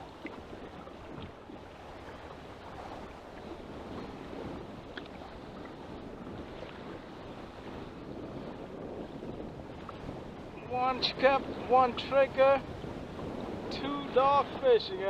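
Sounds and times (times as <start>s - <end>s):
water slapping kayak hull: 0.0s - 15.0s
wind noise on microphone: 0.0s - 15.0s.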